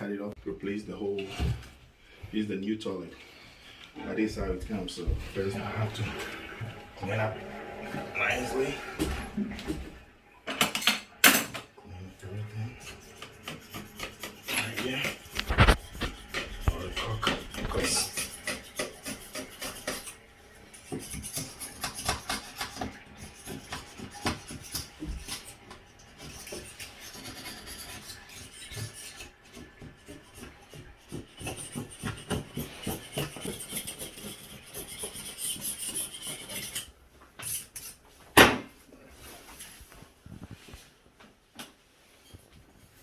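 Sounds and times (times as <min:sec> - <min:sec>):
scraping and rubbing strokes: 0:12.3 - 0:38.1.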